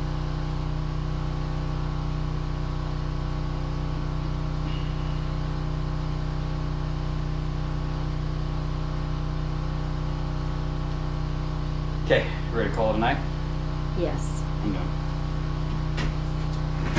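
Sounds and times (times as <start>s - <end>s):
motor humming: 4.6s - 5.4s.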